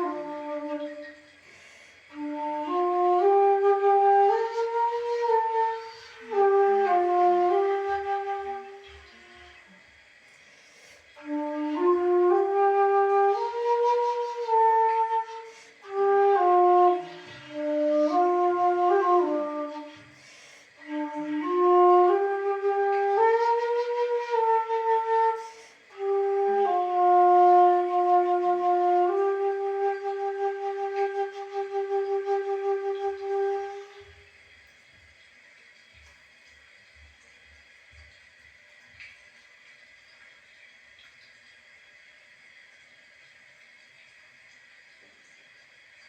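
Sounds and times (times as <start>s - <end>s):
bamboo flute melody: 0.0s - 9.8s, 11.2s - 34.3s.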